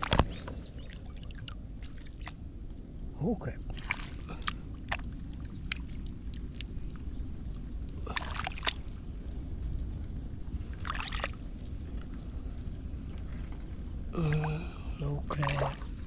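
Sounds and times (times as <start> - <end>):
steady low rumble: 0.0 - 16.0
water and mud sloshing: 0.0 - 16.0
loud splashes: 3.7 - 5.0, 8.0 - 9.0, 10.7 - 11.6, 14.2 - 16.0.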